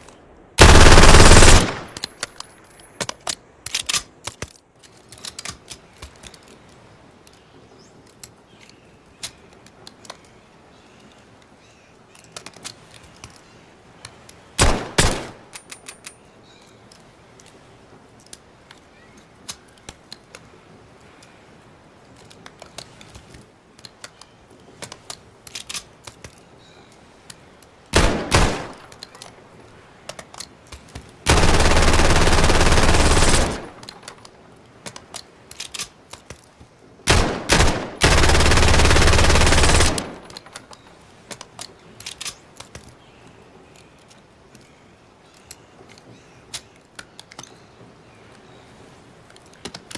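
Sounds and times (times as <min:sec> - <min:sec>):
submachine gun bursts: 0:00.6 - 0:02.0, 0:31.3 - 0:33.8, 0:37.1 - 0:40.4.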